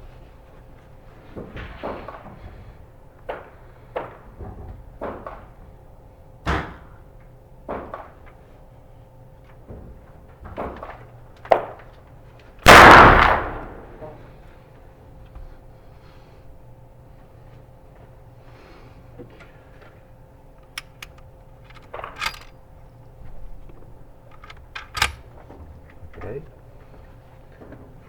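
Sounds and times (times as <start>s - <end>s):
rifle shot: 12.6s - 14.0s, 20.8s - 22.5s
faint clicks and knocks: 20.6s - 22.6s, 23.2s - 27.0s.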